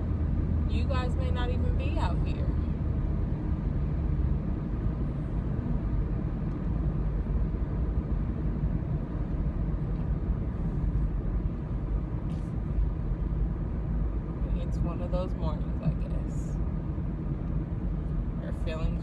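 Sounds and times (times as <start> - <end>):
car road and engine rumble: 0.0 - 19.0.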